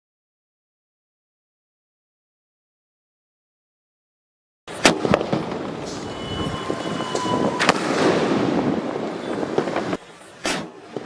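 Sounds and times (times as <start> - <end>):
faint firework whistle: 4.7 - 11.0
firework bang: 4.7 - 11.0
firework crackling hiss: 4.7 - 11.0.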